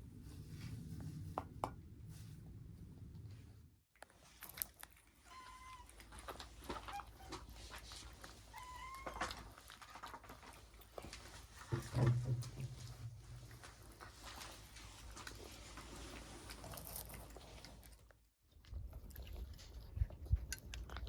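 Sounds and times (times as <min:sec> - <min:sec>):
pet animal calling: 0:05.2 - 0:06.0, 0:08.5 - 0:09.4.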